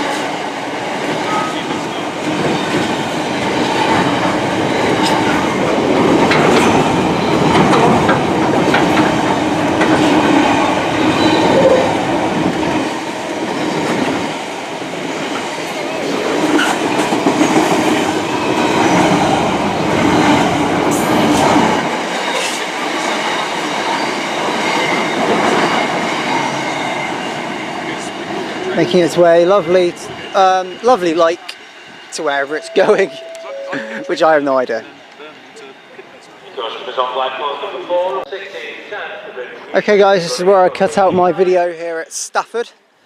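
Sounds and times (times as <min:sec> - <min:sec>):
rail clicks: 0:00.0 - 0:28.8
train wheels rumbling on rails: 0:00.0 - 0:32.6
faint high tones: 0:32.4 - 0:35.0.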